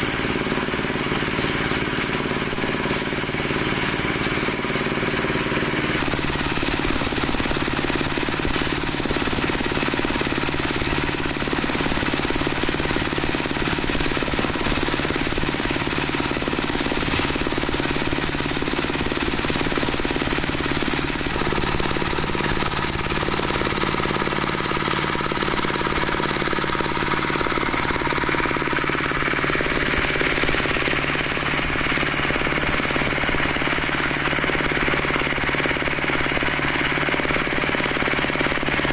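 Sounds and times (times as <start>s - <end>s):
dowel machine running: 0.0s - 38.9s.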